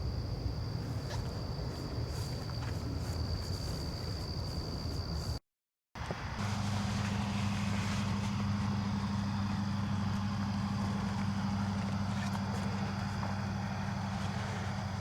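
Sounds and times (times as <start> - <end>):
low mechanical hum: 6.0 - 15.0.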